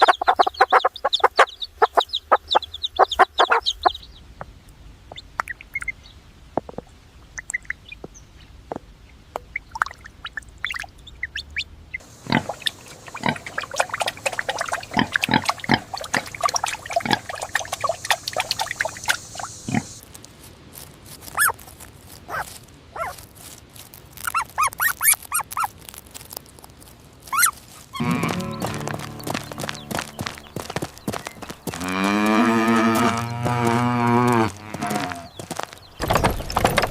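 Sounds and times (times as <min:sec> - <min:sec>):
pigs grunting and squealing: 0:12.2 - 0:20.0, 0:31.7 - 0:35.4.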